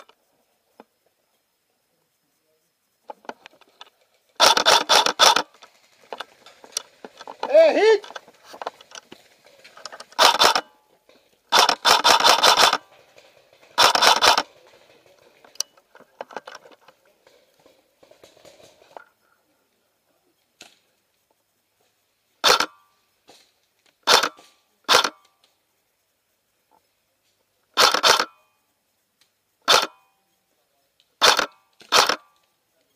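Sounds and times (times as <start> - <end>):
airsoft guns firing bursts: 4.4 - 8.2, 10.1 - 10.8, 11.5 - 15.5, 24.0 - 25.2, 27.8 - 28.4.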